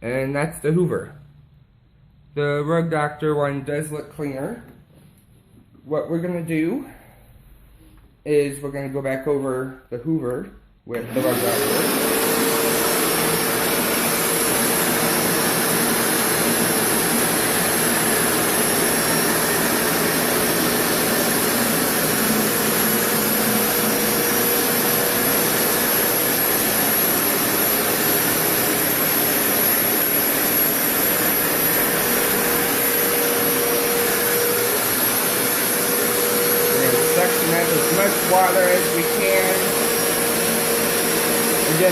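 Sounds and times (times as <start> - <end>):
carpet cleaner suction motor whine: 11.0 - 41.9.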